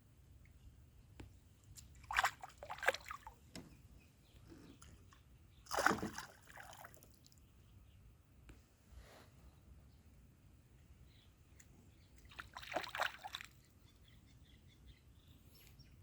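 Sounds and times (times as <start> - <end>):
water splashing and sloshing: 1.2 - 3.8, 4.5 - 7.4, 11.6 - 13.7.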